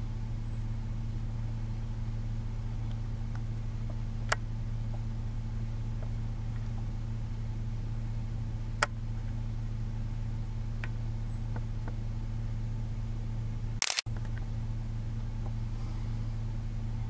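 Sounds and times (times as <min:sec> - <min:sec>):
vehicle engine idling: 0:00.0 - 0:17.0
sharp click: 0:13.8 - 0:14.3.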